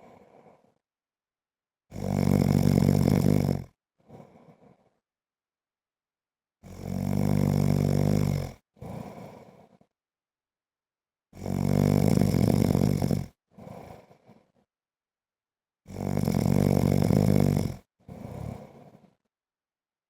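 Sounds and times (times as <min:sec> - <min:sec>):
man snoring: 0:01.9 - 0:04.5, 0:06.6 - 0:09.6, 0:11.4 - 0:14.2, 0:15.9 - 0:19.0.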